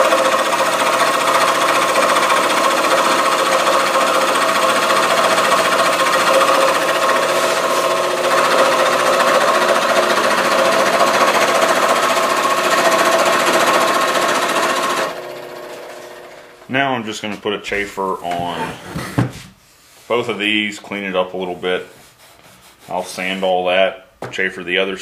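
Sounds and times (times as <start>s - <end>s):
table saw running: 0.0s - 16.7s.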